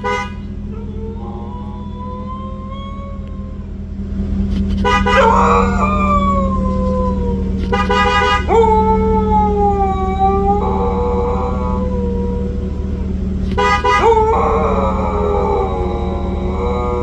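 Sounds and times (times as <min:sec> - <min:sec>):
car horn toots: 0:00.0 - 0:00.8, 0:04.4 - 0:09.2, 0:13.0 - 0:15.1
dog howling: 0:00.0 - 0:04.0, 0:05.0 - 0:17.0
low hum: 0:00.0 - 0:17.0.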